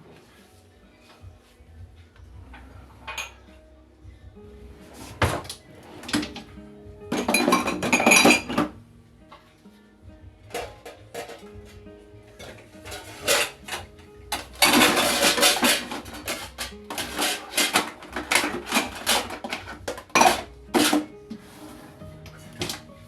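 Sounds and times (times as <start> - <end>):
soft background music: 0.0 - 23.0
dishes and cutlery clattering: 2.9 - 3.5, 5.0 - 6.5, 7.1 - 9.4, 10.5 - 11.8, 12.4 - 22.9.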